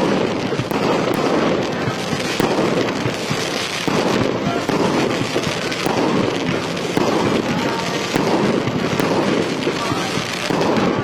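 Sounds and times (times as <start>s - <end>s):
fireworks crackling and bursting: 0.0s - 11.0s.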